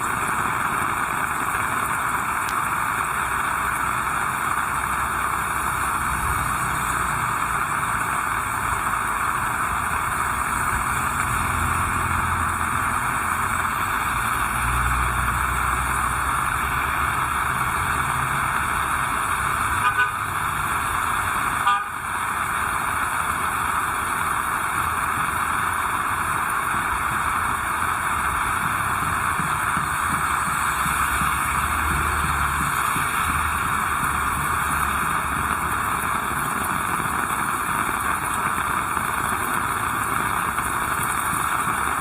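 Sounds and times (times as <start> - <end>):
heavy rain hissing: 0.0 - 42.0
vehicle horn toot: 19.8 - 20.2, 21.6 - 22.0.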